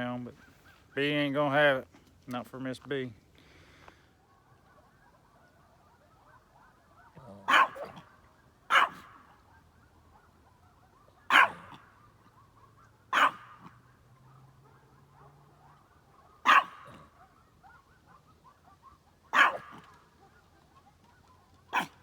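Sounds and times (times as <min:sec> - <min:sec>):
faint wavering calls: 0:04.1 - 0:22.0
dog barking: 0:04.2 - 0:20.5, 0:21.6 - 0:22.0.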